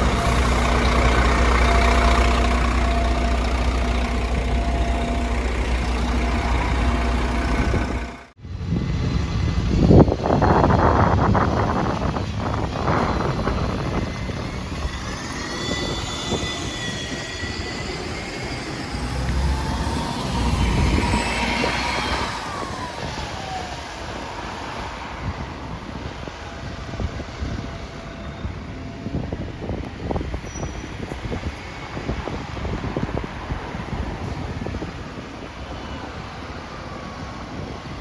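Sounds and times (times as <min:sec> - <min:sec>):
turbocharger whistle: 0:00.0 - 0:08.3, 0:10.2 - 0:26.0
low whine: 0:00.0 - 0:24.2
diesel bus engine pulling away: 0:00.0 - 0:38.0.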